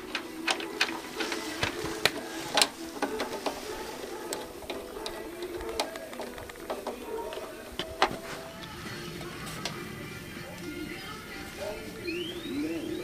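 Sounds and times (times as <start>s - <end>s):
hand tools clicking and tapping: 0.0s - 9.9s.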